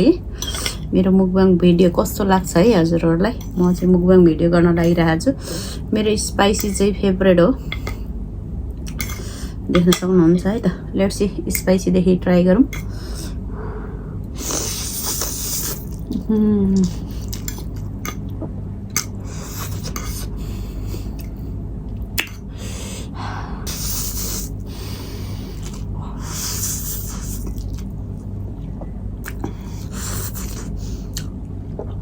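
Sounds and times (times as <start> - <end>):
steady low hum: 0.0 - 32.0
person slurping noodles: 14.4 - 16.1
person chewing: 14.4 - 20.4, 23.7 - 32.0.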